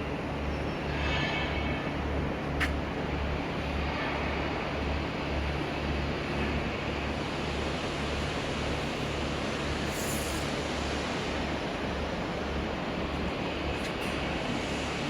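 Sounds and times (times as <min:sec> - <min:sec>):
brief high hiss: 0:09.8 - 0:10.5.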